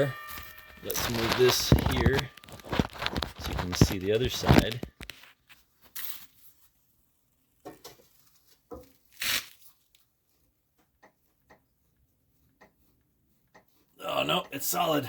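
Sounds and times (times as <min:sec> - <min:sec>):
handling noise rustling and scraping: 0:00.0 - 0:10.4.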